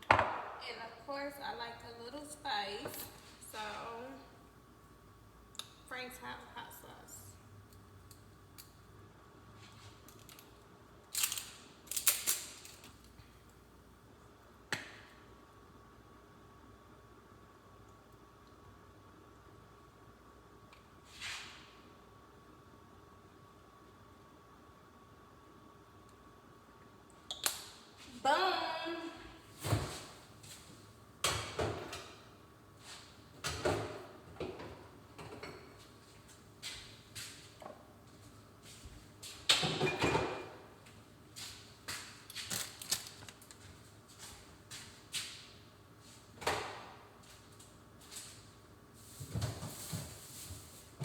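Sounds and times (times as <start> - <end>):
kitchen knocks and clatters: 0.0 - 0.6, 31.2 - 32.3, 33.4 - 35.8, 39.5 - 40.7.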